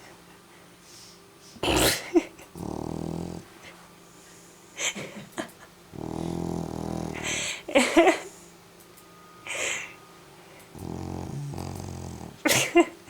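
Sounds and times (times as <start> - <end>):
dog snoring: 1.6 - 4.8, 5.9 - 8.6, 10.6 - 13.0.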